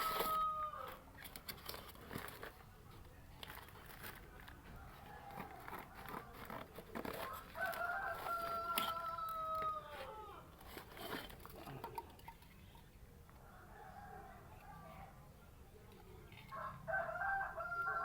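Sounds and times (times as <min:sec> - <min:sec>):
rooster crowing: 0:00.0 - 0:01.0, 0:07.2 - 0:10.3, 0:13.4 - 0:15.2, 0:16.5 - 0:18.0.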